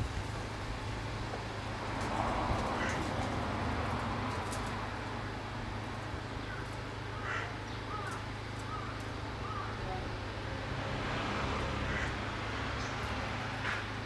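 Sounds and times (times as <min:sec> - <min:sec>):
distant traffic hum: 0:00.0 - 0:14.0
vehicle passing: 0:09.9 - 0:14.0.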